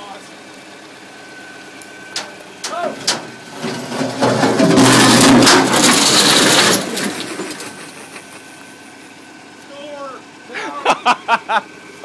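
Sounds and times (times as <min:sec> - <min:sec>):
heavy metal grinding crash: 0:02.2 - 0:08.0.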